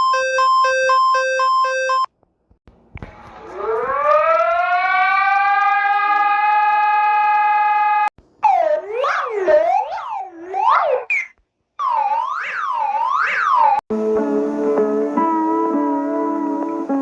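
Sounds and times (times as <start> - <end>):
alternating electronic alarm beep: 0.0 - 2.1
siren wailing: 3.2 - 11.1, 11.8 - 15.9.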